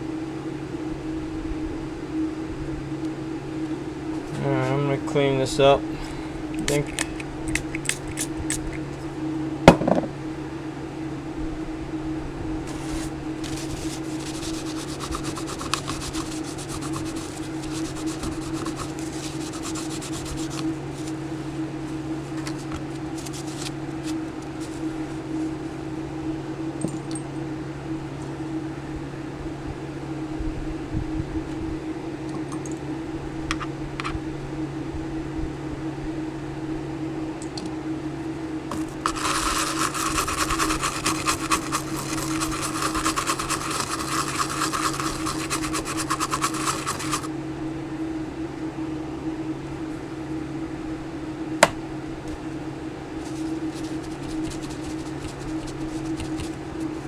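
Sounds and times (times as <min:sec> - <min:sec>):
small fan humming: 0:00.0 - 0:57.0
fast crackling clicks: 0:06.6 - 0:08.8.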